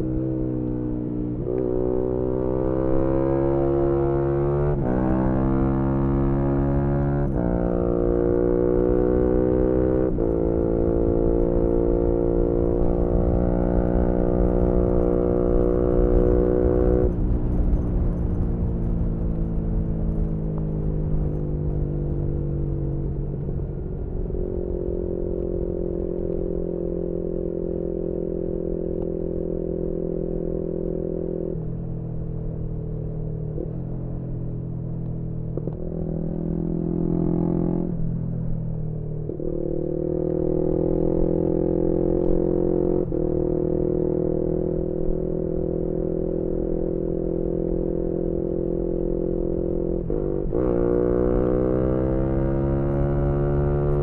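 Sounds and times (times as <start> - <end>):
motorcycle engine revving: 1.4 - 21.4, 35.5 - 38.1, 39.1 - 54.0.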